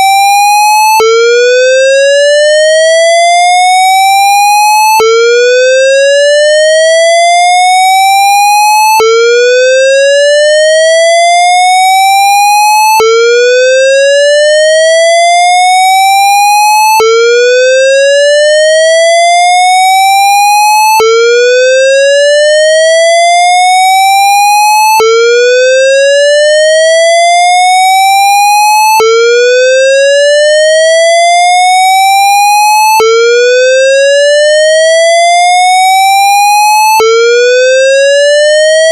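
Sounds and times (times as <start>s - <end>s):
fire alarm whoop tone: 0.0s - 38.9s.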